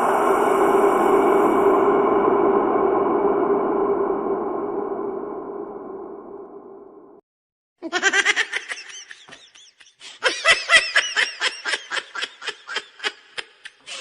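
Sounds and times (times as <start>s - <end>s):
high-pitched giggling laughter: 7.8s - 14.0s.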